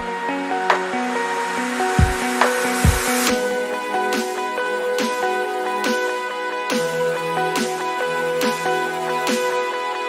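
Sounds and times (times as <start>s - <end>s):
held synth chords: 0.0s - 10.0s
electronic drum beat: 1.8s - 3.5s, 4.1s - 6.1s.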